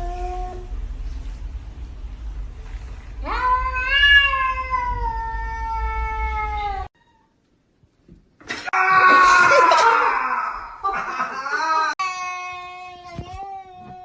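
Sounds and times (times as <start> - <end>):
cat yowling: 3.2 - 7.3.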